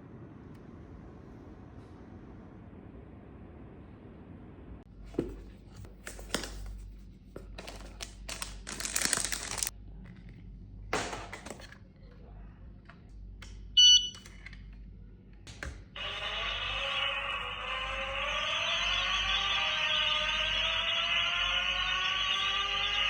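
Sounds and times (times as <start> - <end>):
short electronic beep: 13.8 - 14.2.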